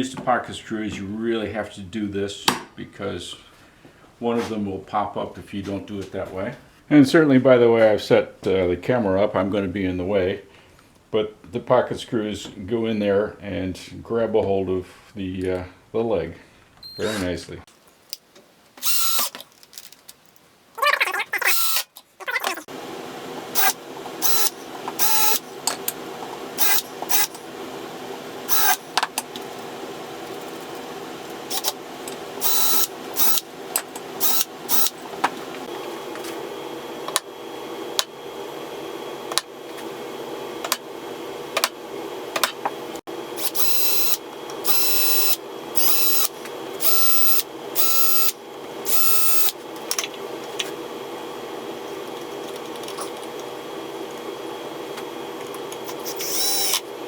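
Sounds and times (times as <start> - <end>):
steady mechanical hum: 0.0 - 57.0
drill whirring in short bursts: 18.8 - 19.4, 21.4 - 21.9, 23.4 - 29.0, 31.4 - 35.0, 43.3 - 49.6, 55.8 - 56.9.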